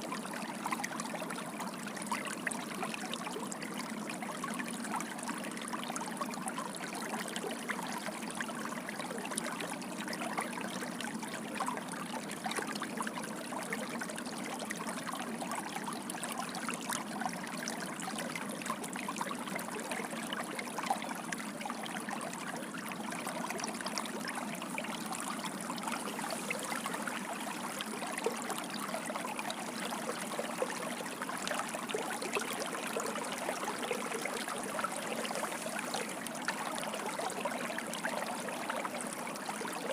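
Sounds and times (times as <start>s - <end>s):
water gushing and splashing: 31.9s - 36.8s.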